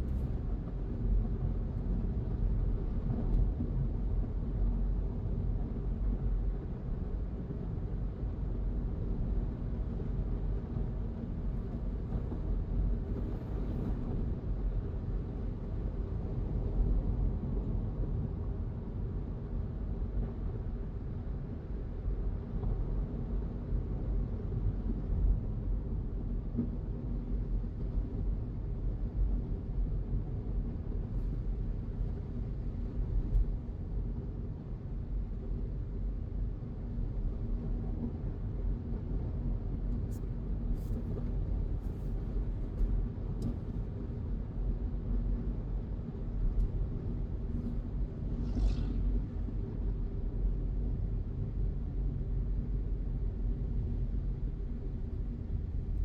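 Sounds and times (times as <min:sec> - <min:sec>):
car engine and tyre rumble: 0:00.0 - 0:56.0.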